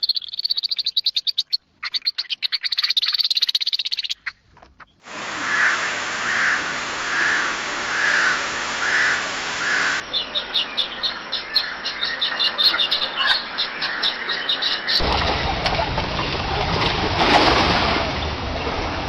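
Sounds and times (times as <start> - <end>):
birds chirping quickly and high: 0.0 - 15.0
steady hiss: 5.0 - 10.0
bird repeating a call: 5.4 - 15.0.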